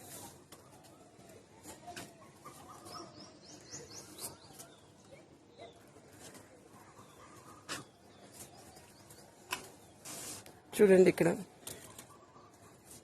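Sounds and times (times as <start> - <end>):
small birds chirping: 0.1 - 10.4.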